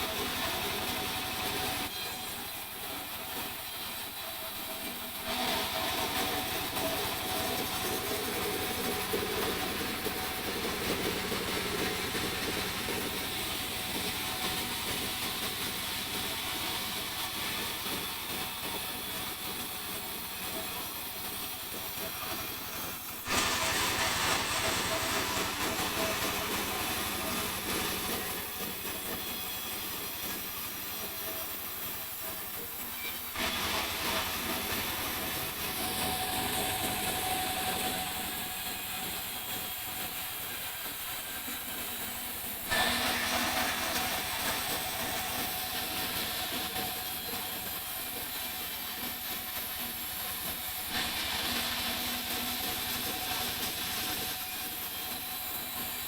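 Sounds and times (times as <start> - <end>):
saw cutting through log: 0.0 - 56.0.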